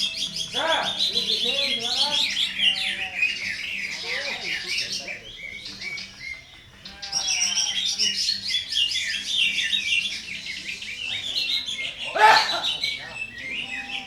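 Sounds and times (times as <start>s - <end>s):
bird singing harsh chattering song: 0.0s - 14.0s.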